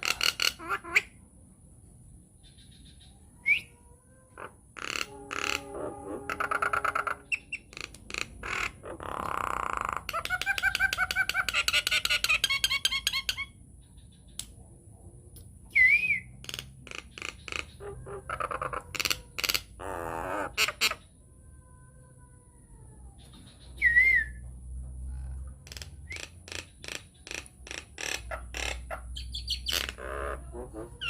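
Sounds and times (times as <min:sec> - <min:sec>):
myna singing varied calls: 0:03.0 - 0:07.7.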